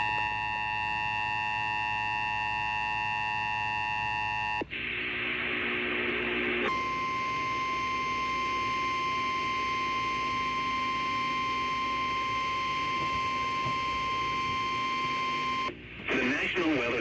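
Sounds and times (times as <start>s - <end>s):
faint radio hiss: 4.6s - 7.0s, 13.6s - 17.0s.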